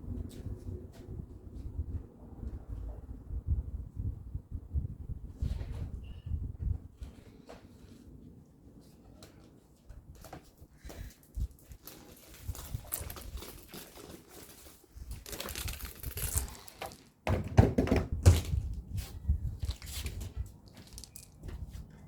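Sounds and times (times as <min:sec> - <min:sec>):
rustling: 0:07.0 - 0:17.2, 0:19.0 - 0:22.0
knocks thuds and clatter: 0:17.2 - 0:18.7.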